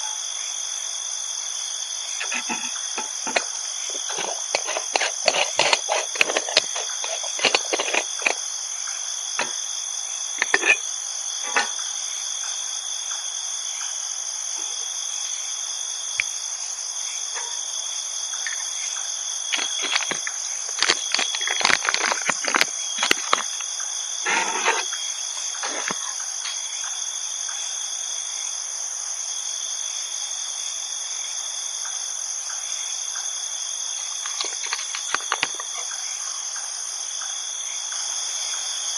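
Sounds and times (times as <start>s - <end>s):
insects trilling: 0.0s - 38.9s
clicks and rustling: 2.2s - 8.4s, 10.4s - 10.8s, 19.5s - 23.7s, 34.2s - 35.9s.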